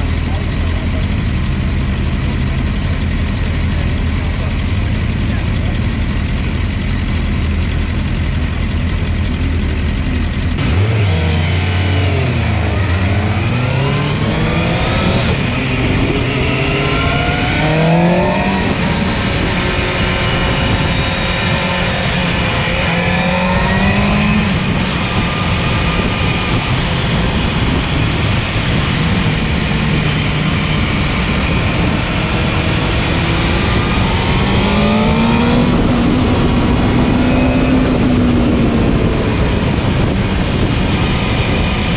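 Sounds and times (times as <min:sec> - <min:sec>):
motorcycle engine revving: 0:00.0 - 0:41.9
wind noise: 0:10.4 - 0:41.9.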